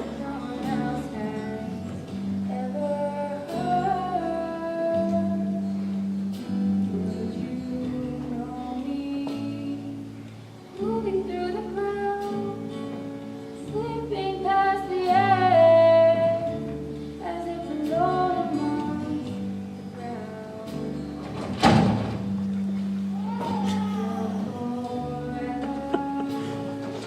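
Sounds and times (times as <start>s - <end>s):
person singing: 0.0s - 5.8s, 6.8s - 10.1s, 23.1s - 27.0s
guitar accompaniment: 0.0s - 27.0s.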